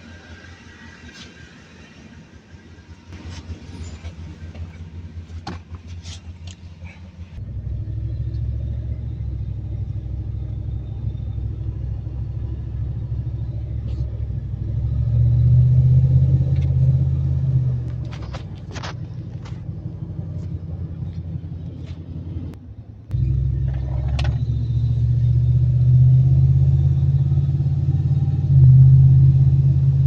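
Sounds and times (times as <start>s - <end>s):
car engine running: 2.9s - 30.0s.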